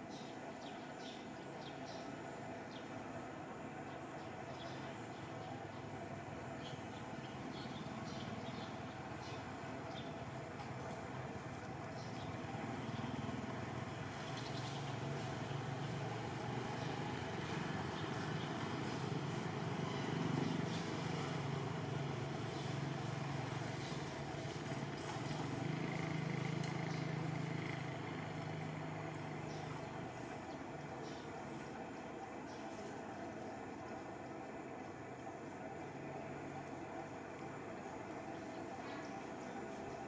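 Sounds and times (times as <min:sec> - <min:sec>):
engine running: 0:01.9 - 0:40.0.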